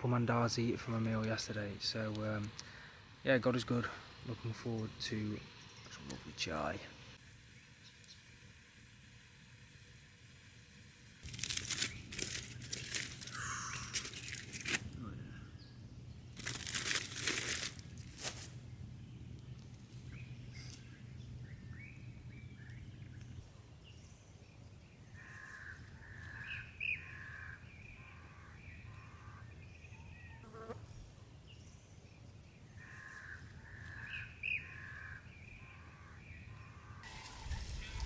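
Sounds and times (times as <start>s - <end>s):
birds calling: 11.2s - 17.7s, 18.8s - 38.0s.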